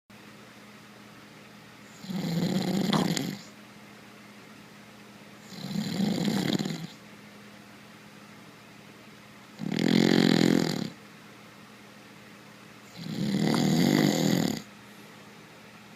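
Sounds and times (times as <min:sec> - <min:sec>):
man snoring: 0:02.0 - 0:03.5, 0:05.5 - 0:06.9, 0:09.6 - 0:11.0, 0:12.9 - 0:14.7.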